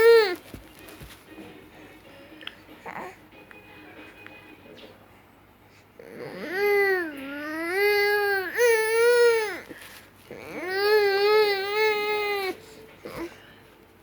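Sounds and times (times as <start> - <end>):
infant crying calls: 0.0 - 0.4, 6.0 - 9.7, 10.3 - 12.6.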